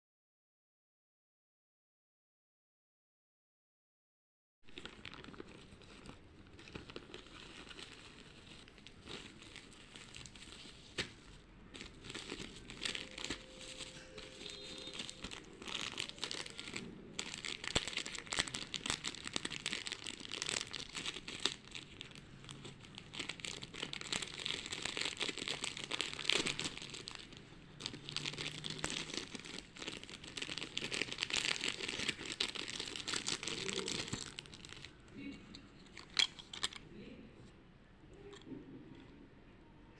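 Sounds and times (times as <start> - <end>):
packaging tearing: 4.7 - 35.0
packaging crinkling and rustling: 4.7 - 35.1, 35.8 - 36.8.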